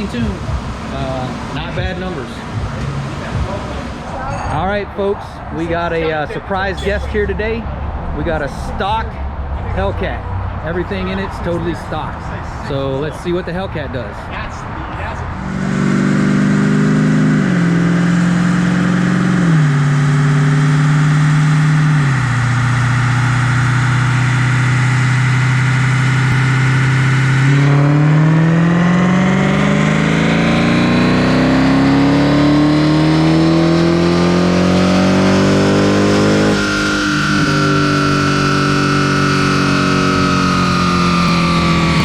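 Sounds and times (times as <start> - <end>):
car engine on a dyno: 0.0 - 4.2, 15.0 - 42.0.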